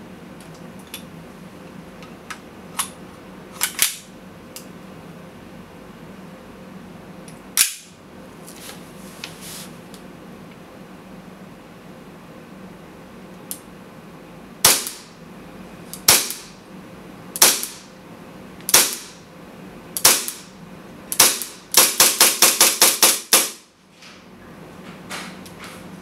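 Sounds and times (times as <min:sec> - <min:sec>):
airsoft pistol shots: 0:14.6 - 0:15.1, 0:16.1 - 0:16.5, 0:17.4 - 0:17.9, 0:18.7 - 0:19.2, 0:20.0 - 0:20.5, 0:21.2 - 0:23.6.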